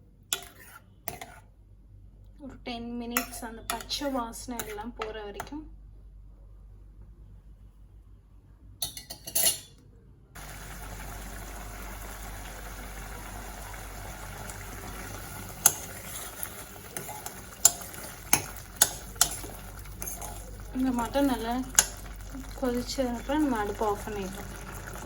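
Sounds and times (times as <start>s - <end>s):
spoon clinking against pan: 8.8s - 9.8s, 15.5s - 22.6s
food bubbling in a pan: 10.4s - 25.0s.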